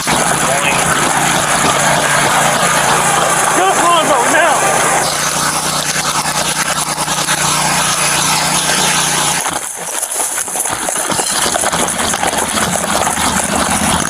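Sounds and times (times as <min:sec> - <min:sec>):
loud hissy noise: 0:00.0 - 0:09.4
vehicle engine running: 0:00.0 - 0:14.0.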